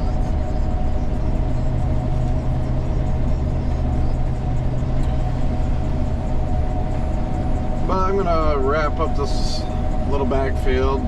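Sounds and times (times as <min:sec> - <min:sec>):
combine harvester engine rumble: 0:00.0 - 0:11.0
steady mid-pitched whine: 0:00.0 - 0:11.0.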